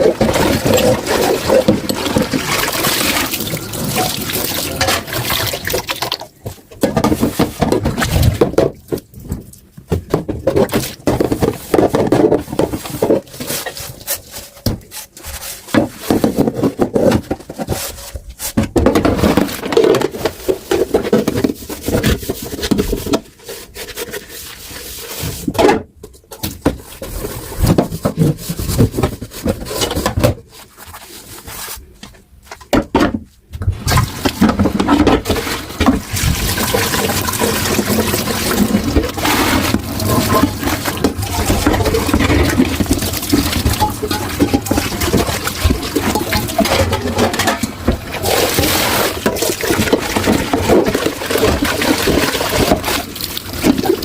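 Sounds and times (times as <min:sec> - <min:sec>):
dishes being scrubbed by hand: 0:00.0 - 0:05.9, 0:34.0 - 0:54.0
dishes knocking and clattering: 0:00.0 - 0:09.0, 0:34.0 - 0:48.2.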